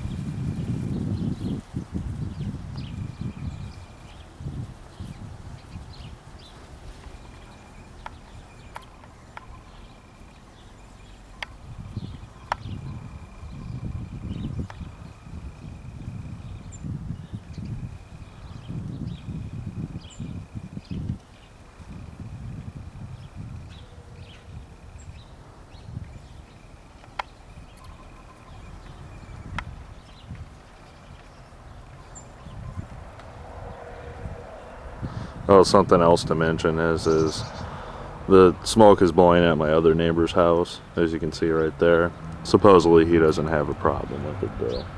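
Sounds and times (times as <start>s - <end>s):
wind buffeting microphone: 0.0s - 44.9s
sharp clicks: 6.8s - 10.6s, 11.3s - 12.8s, 26.8s - 28.0s.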